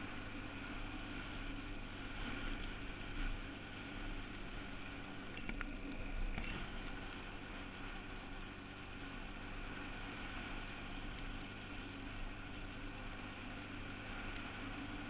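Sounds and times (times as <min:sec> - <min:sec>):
atv engine running: 0:00.0 - 0:15.0.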